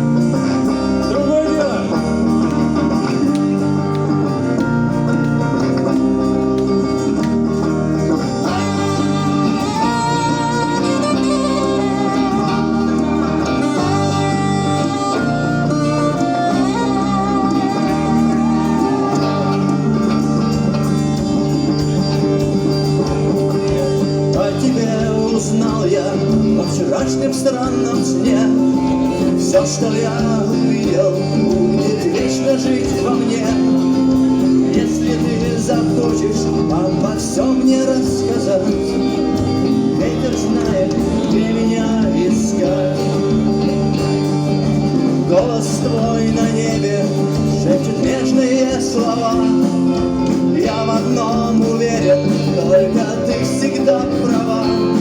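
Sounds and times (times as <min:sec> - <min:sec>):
saxophone melody: 0:00.0 - 0:24.4
backing track with bass and chords: 0:00.0 - 0:55.0.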